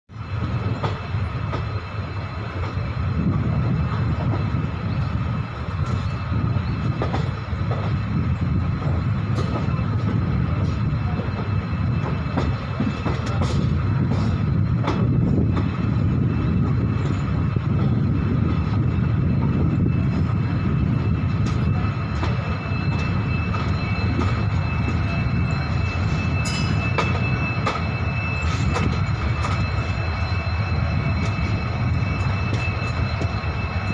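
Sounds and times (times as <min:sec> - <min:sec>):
diesel locomotive humming: 0:00.1 - 0:33.9.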